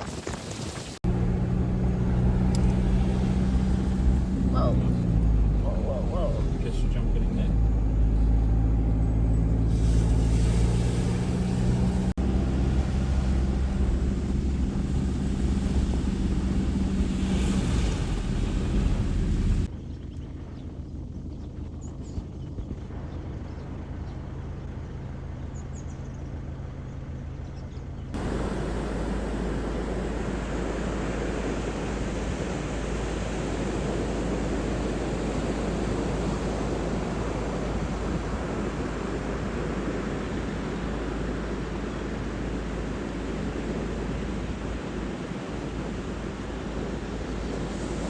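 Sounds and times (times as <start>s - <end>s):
tyre and wind noise: 0.0s - 5.6s
engine hum inside vehicle: 1.0s - 48.0s.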